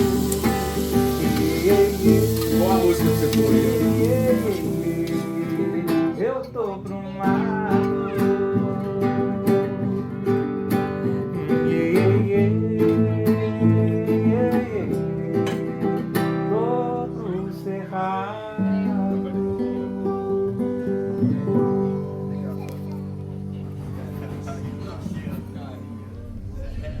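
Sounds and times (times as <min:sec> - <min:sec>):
person singing: 0:00.0 - 0:21.1
strummed acoustic guitar: 0:00.0 - 0:27.0.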